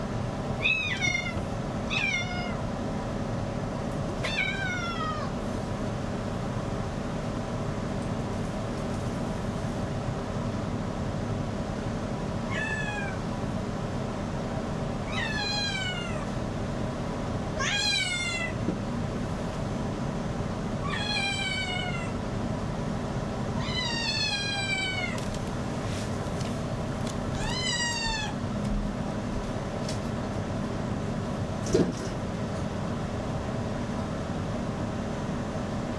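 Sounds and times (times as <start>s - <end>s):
cat meowing: 0.6s - 2.6s, 4.2s - 5.4s, 12.4s - 13.2s, 15.1s - 16.4s, 17.6s - 18.6s, 20.8s - 22.2s, 23.6s - 25.3s, 27.3s - 28.4s.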